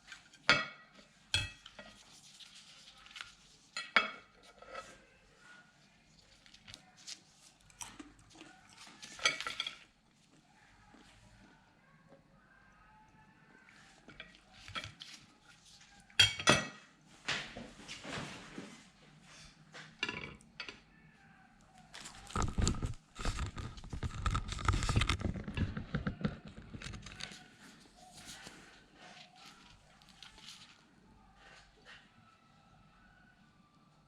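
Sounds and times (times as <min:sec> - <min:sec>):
scraping and rustling: 0:01.1 - 0:07.7, 0:21.9 - 0:32.1.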